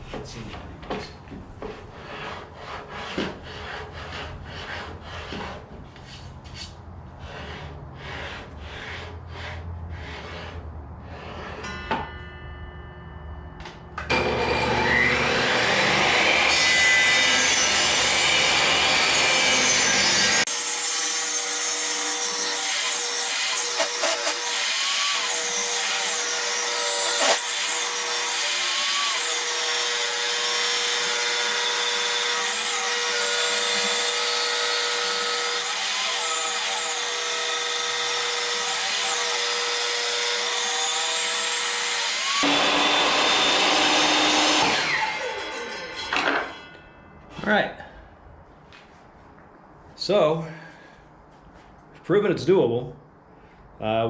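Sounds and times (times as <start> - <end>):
table saw cutting wood: 14.1 - 46.8.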